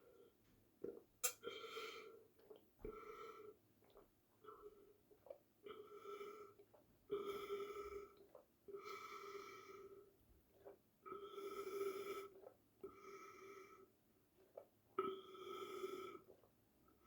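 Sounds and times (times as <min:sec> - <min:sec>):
person gulping water: 0:00.8 - 0:01.6.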